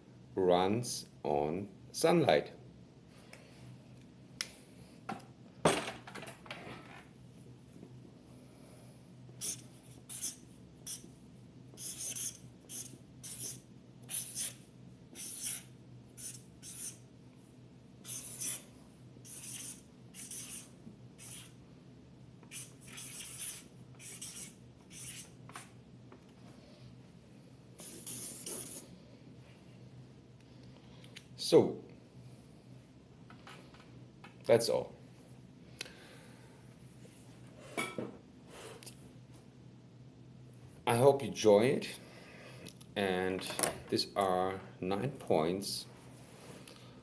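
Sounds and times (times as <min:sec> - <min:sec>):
low room hum: 0:00.0 - 0:47.0
pen strokes writing: 0:15.2 - 0:17.0, 0:18.1 - 0:18.6, 0:19.3 - 0:21.6, 0:22.5 - 0:25.3, 0:27.8 - 0:28.8.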